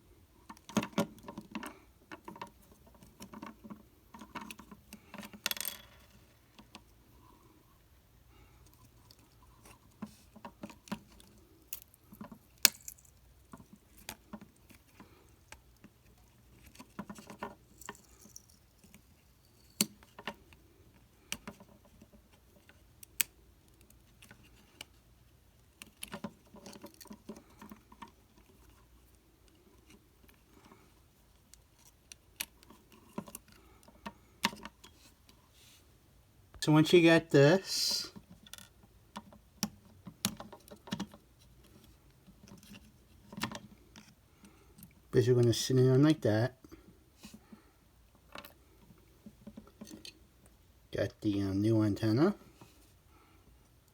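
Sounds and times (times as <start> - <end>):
plastic parts clicking and scraping: 0.4 - 6.9, 8.6 - 35.4, 38.2 - 45.0.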